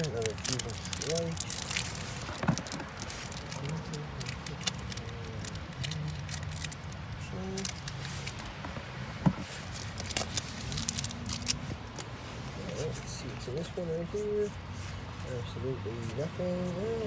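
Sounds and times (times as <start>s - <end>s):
foil wrapper crinkling: 0.0s - 7.0s, 9.6s - 12.0s
trading cards being handled: 0.0s - 17.0s.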